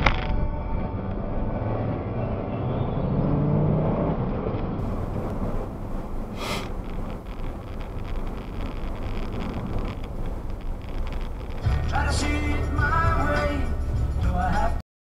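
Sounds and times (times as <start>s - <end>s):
brief hiss: 4.8s - 13.8s
vehicle engine running: 4.8s - 14.8s.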